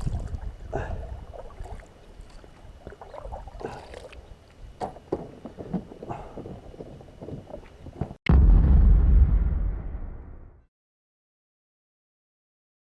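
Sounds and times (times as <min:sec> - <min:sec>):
wind rumble on microphone: 0:00.0 - 0:03.6
water sounds: 0:00.0 - 0:05.1.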